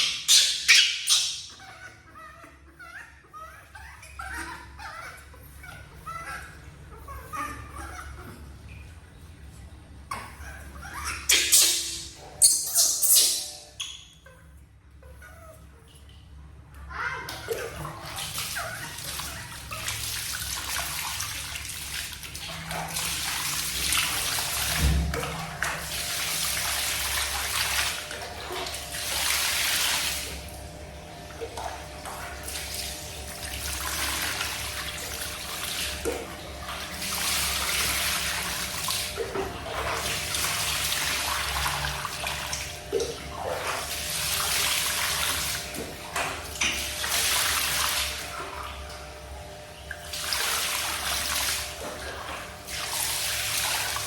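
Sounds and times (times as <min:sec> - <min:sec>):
water pouring and splashing: 0:17.4 - 0:30.4, 0:31.4 - 0:49.2, 0:49.8 - 0:54.0.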